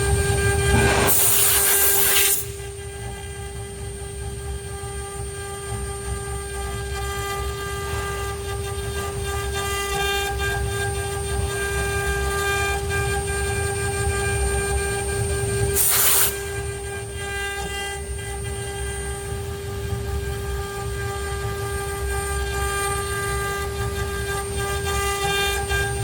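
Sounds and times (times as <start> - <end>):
router spindle whine: 0.0 - 26.0
low rumble: 0.2 - 3.2
loud hiss: 0.7 - 2.6, 15.8 - 16.4.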